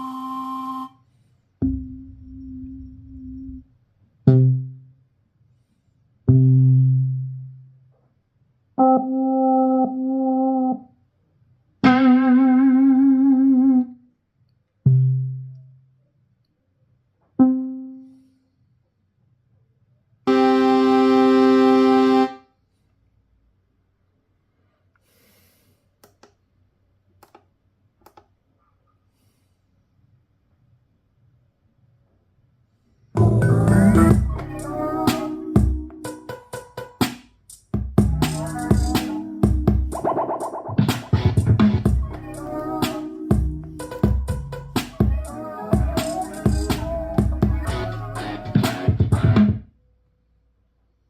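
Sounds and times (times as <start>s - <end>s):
synth preset notes: 4.3s - 4.9s, 20.3s - 22.4s, 33.2s - 36.4s, 38.0s - 49.5s
synthesizer held note: 8.8s - 10.9s, 20.3s - 22.4s.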